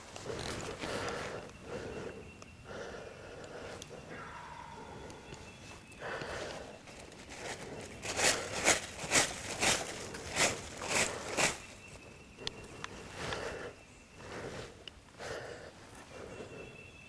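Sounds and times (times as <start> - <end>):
footsteps crunching dry leaves: 5.6 - 12.1.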